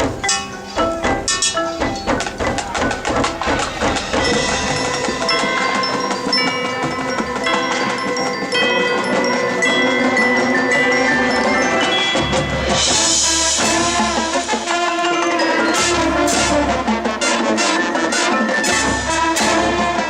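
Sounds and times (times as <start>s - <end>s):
low drum hits: 0.0s - 8.2s
marimba and glockenspiel: 0.0s - 20.0s
sharp percussion strokes: 0.0s - 20.0s.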